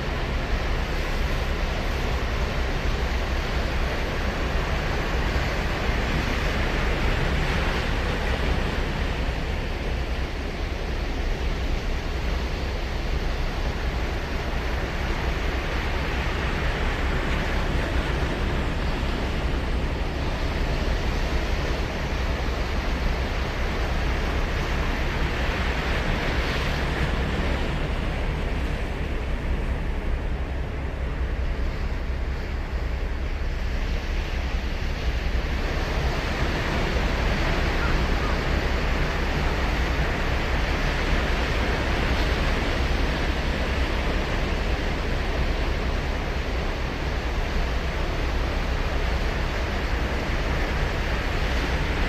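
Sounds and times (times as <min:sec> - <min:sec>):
constant low rumble: 0:00.0 - 0:52.0
waves breaking on beach: 0:00.0 - 0:52.0.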